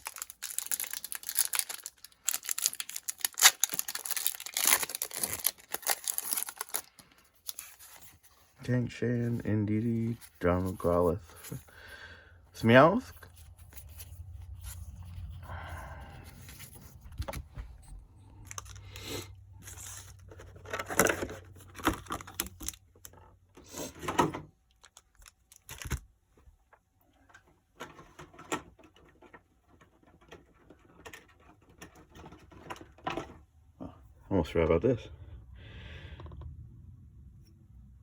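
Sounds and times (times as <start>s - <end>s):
trading cards rustling and sliding: 0.0s - 8.6s, 9.2s - 11.8s, 13.1s - 22.8s
low steady hum: 24.6s - 38.0s.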